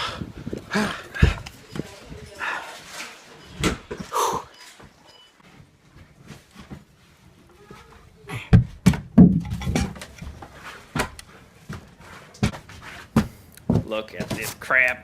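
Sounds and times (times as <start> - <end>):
heavy knocks and thumps: 8.5 - 10.2, 12.4 - 14.5.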